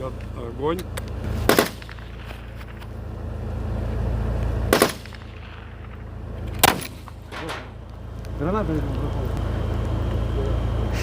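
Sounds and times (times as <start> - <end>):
steady low rumble: 0.0 - 11.0
gunshot reports: 1.5 - 2.2, 4.7 - 5.6.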